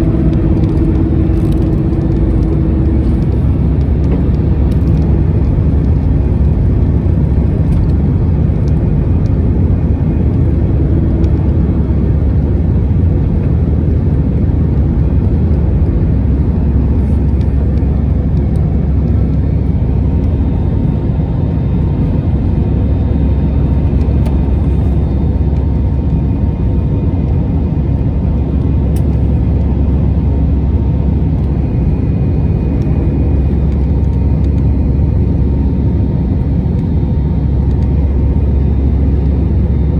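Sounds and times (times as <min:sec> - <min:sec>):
faint whine: 0:00.0 - 0:28.2
aircraft cabin engine noise: 0:00.0 - 0:39.9.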